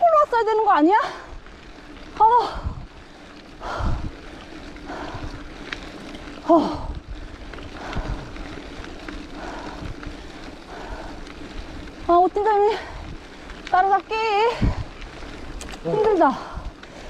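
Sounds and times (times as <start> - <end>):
wind rumble on microphone: 0.0 - 17.0
heavy rhythmic breathing: 2.4 - 13.6.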